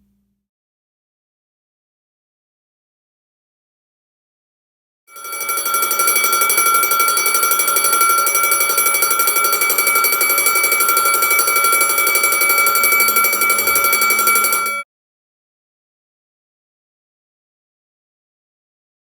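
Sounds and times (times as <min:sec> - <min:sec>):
burglar alarm bell ringing: 0:05.1 - 0:14.8.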